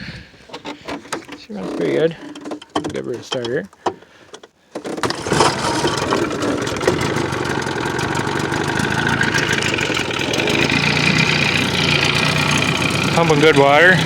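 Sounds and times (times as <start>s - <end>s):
outboard motor pull-started: 4.7s - 14.0s
outboard motor idling: 4.9s - 14.0s.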